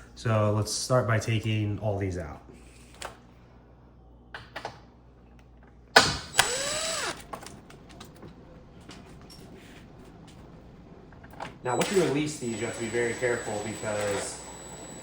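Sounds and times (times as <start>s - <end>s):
cordless driver whirring: 6.3s - 7.5s, 11.7s - 15.0s.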